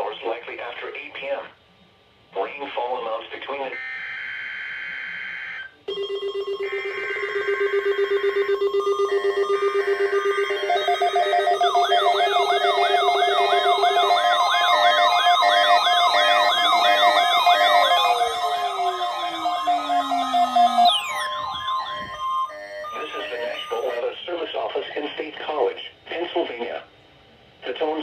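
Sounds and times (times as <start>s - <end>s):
tone sliding downward: 5.9s - 24.0s
buzzy data bursts: 6.6s - 24.0s
wailing siren-like sweep: 6.6s - 24.0s.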